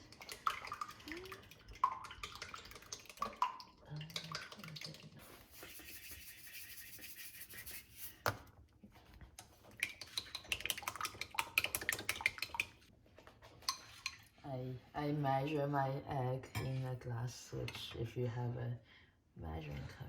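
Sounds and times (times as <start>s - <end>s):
utensil beating egg in bowl: 0.0s - 8.4s, 9.4s - 12.9s.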